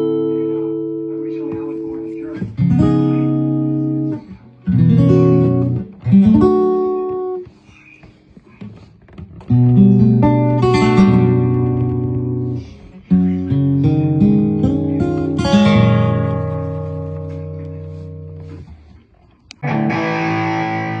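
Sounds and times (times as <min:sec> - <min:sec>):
acoustic guitar chords strummed: 0:19.6 - 0:21.0.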